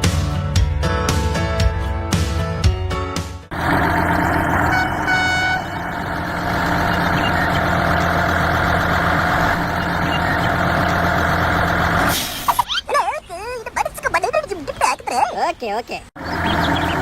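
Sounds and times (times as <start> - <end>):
tractor engine running: 3.5 - 12.6, 16.2 - 17.0.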